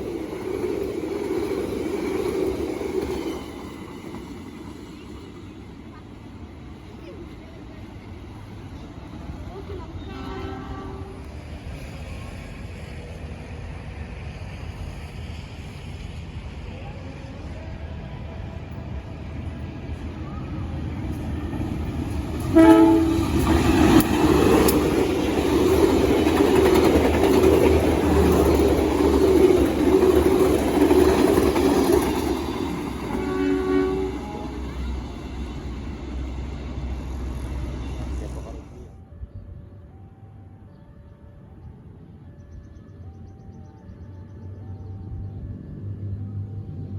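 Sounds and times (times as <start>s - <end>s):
train wheels rumbling and clacking: 0.0s - 38.9s
train horn blast: 10.0s - 11.4s, 22.4s - 24.0s, 33.1s - 35.0s.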